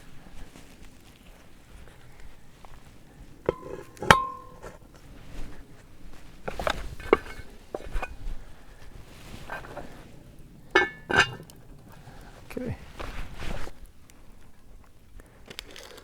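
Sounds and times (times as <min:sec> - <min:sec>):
cast iron pot knocks: 0:03.4 - 0:04.8, 0:06.4 - 0:08.2, 0:10.7 - 0:11.9
light metal clinks and taps: 0:03.4 - 0:12.6.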